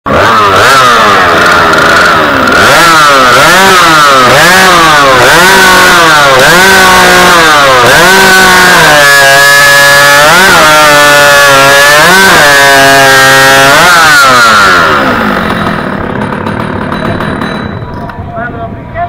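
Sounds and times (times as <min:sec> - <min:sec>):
chainsaw engine revving: 0:00.1 - 0:17.9.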